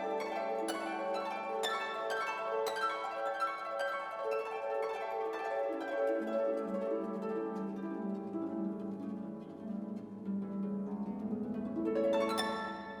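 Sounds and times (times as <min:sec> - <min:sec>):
plucked string music: 0:05.8 - 0:13.0.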